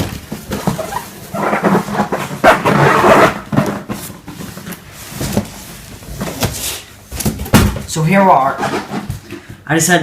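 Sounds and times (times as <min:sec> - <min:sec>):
cardboard box scraping and rustling: 0:00.4 - 0:06.9, 0:08.4 - 0:09.2.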